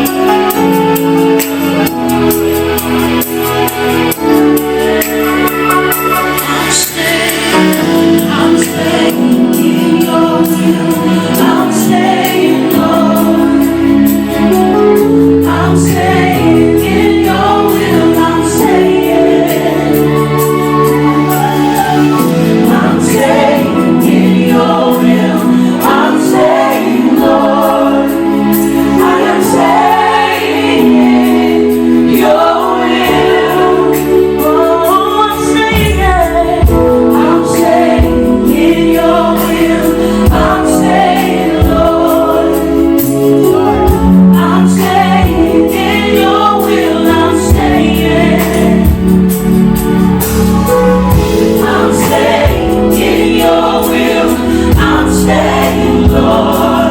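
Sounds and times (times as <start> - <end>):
gospel choir singing: 0.0 - 56.9
instrumental accompaniment: 0.0 - 56.9.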